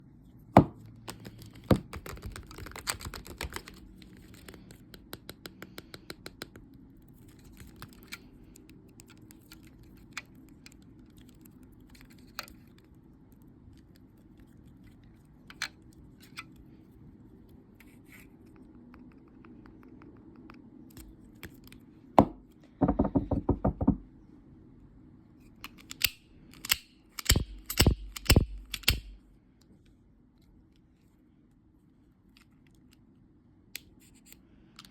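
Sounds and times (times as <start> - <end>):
packaging taps and crinkles: 1.1 - 6.6.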